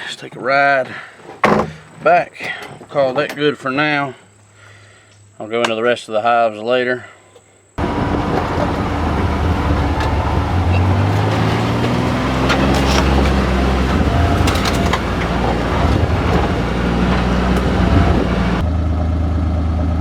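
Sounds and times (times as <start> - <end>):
sharp knocks and rattles: 7.8 - 18.6
vehicle engine running: 7.8 - 20.0.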